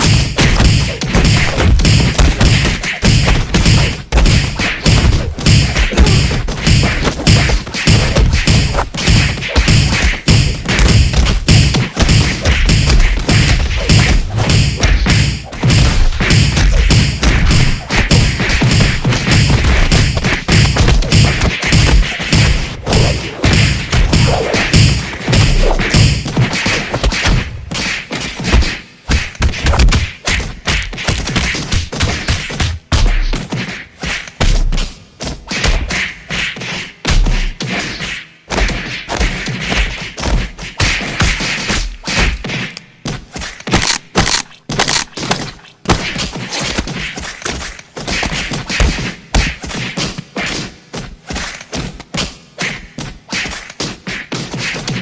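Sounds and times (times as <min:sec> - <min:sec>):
punch and body-hit thuds: 0:00.0 - 0:27.6, 0:28.4 - 0:33.1, 0:38.5 - 0:42.8, 0:43.6 - 0:49.9.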